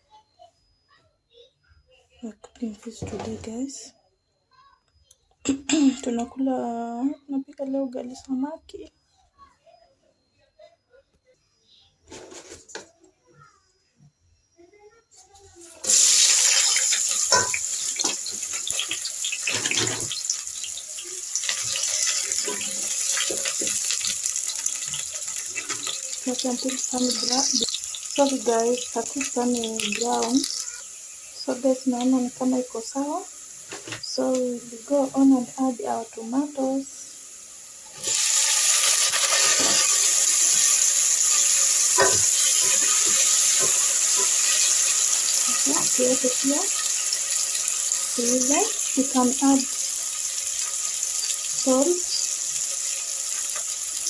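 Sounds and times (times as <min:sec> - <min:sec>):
fish sizzling in hot oil: 0:15.8 - 0:54.0.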